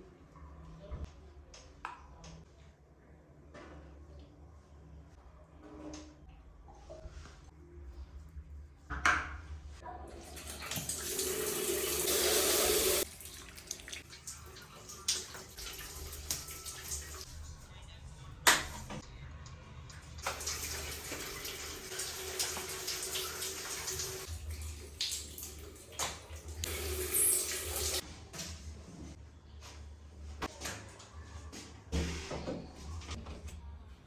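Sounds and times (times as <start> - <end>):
water running from a tap: 10.2 - 17.5, 20.2 - 28.0.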